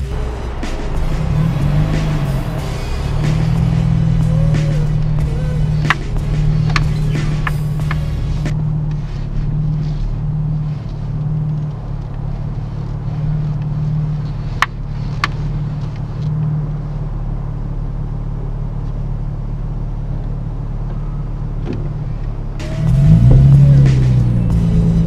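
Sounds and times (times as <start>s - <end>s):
car engine droning: 0.0s - 25.0s.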